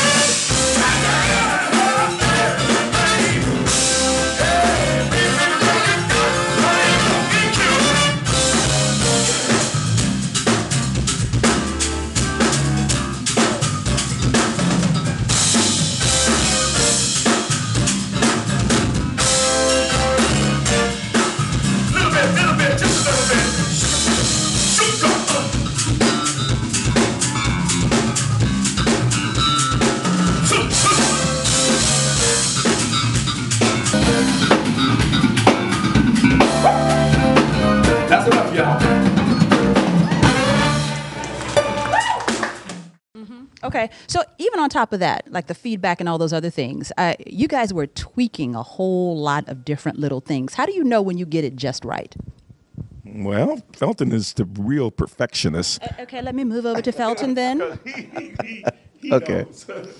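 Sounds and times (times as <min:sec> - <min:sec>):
bass line: 0:00.0 - 0:41.2, 0:51.8 - 0:59.4
live band playing: 0:00.0 - 0:43.0.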